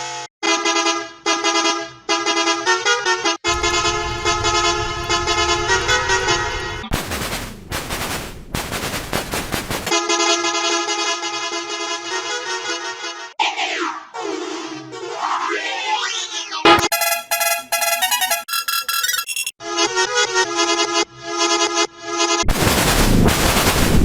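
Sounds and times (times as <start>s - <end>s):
low rumble: 3.5s - 9.9s
bus horn blasts: 16.7s - 18.5s.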